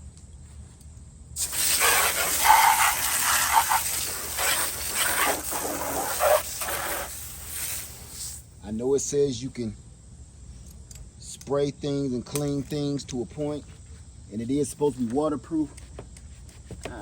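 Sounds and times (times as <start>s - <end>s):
hose water spraying: 1.4s - 8.4s.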